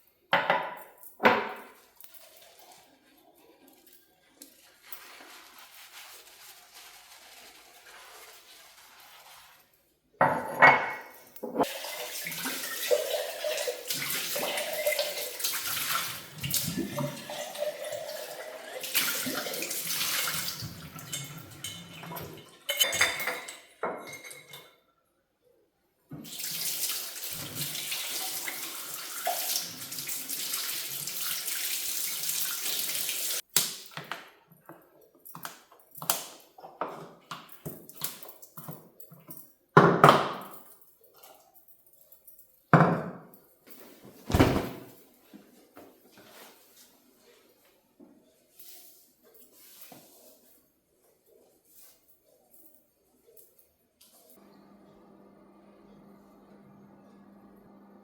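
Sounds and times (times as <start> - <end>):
tap water running into sink: 11.5 - 22.6, 26.1 - 33.4.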